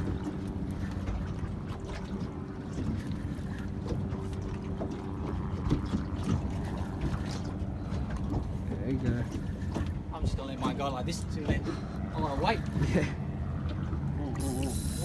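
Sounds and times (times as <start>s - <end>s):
wind buffeting microphone: 5.4s - 13.6s
steady low hum: 13.1s - 15.0s.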